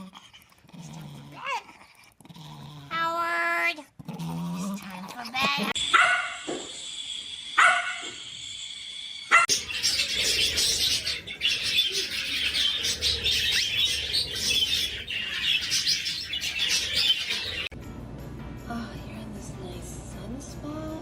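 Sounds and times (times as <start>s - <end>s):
small birds chirping: 9.1s - 17.8s.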